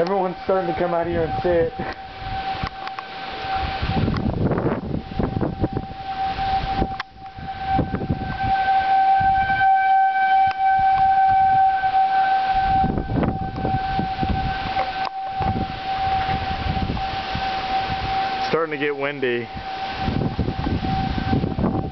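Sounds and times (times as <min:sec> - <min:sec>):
warning siren steady tone: 0:00.0 - 0:21.9.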